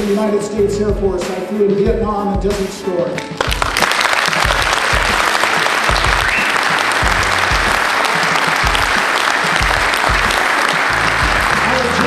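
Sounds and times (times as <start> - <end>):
background music with beat: 0.0 - 12.0
audience applauding: 3.3 - 12.0.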